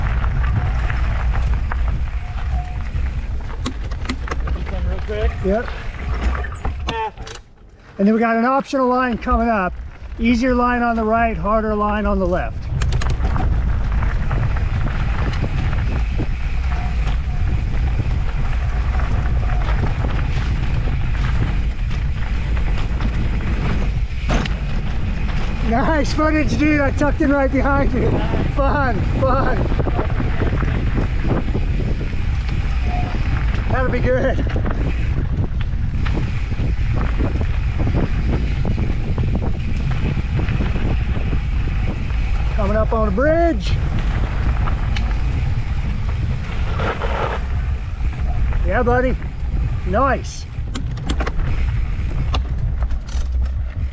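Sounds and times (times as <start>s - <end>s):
tyres rolling on dirt trail: 0.0s - 53.9s
wind buffeting microphone: 0.0s - 53.9s
clicks and rattles from bumps: 3.2s - 7.8s, 12.6s - 14.5s, 52.2s - 53.9s.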